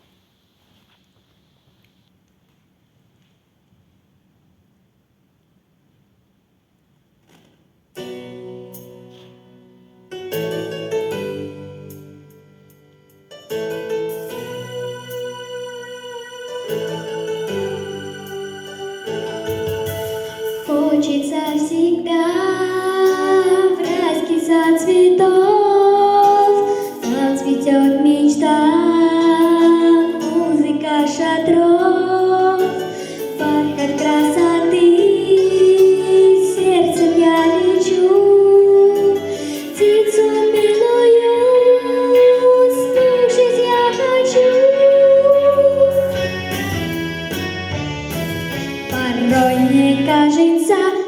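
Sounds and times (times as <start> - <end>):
pop music backing track: 13.4 - 51.0.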